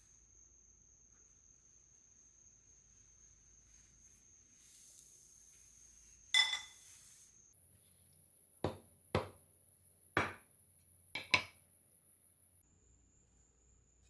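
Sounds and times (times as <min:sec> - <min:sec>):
sharp knocks on hard surface: 0:08.7 - 0:09.4, 0:10.2 - 0:10.4.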